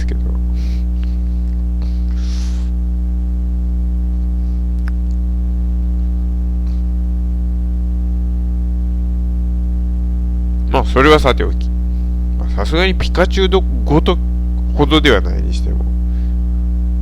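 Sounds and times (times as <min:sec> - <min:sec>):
electrical mains hum: 0:00.0 - 0:17.0
faint breath-like puff: 0:00.6 - 0:02.8
small click: 0:04.8 - 0:05.2.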